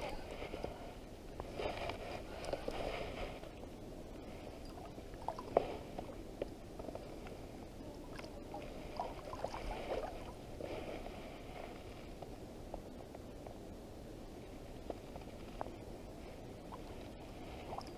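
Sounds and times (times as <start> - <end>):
river water lapping at shore: 8.0 - 11.2.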